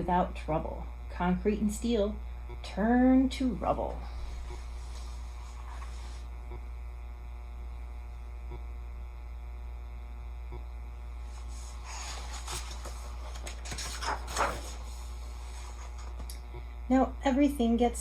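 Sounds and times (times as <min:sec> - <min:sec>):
low electrical mains hum: 0:00.0 - 0:18.0
page crinkling: 0:11.3 - 0:16.3
paper rustling: 0:11.3 - 0:16.3.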